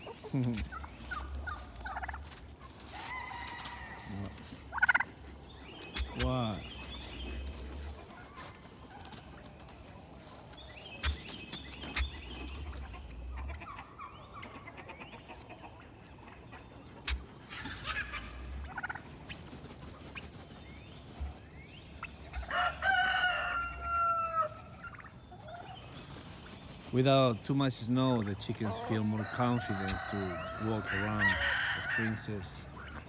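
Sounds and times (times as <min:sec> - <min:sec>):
turkeys gobbling: 0:00.0 - 0:27.0, 0:27.8 - 0:33.0
chickens clucking: 0:00.0 - 0:33.0
rooster crowing: 0:22.5 - 0:24.6, 0:29.2 - 0:32.2.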